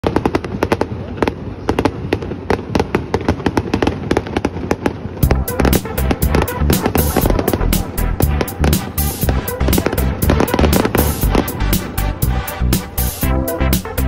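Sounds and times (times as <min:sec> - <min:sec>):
deep firework booms: 0:00.0 - 0:13.9
fireworks crackling and popping: 0:00.0 - 0:14.0.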